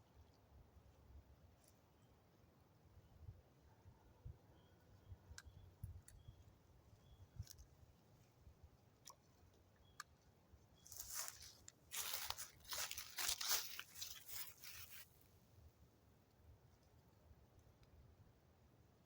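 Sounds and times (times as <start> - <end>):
crinkling rustling noise: 10.8 - 15.3.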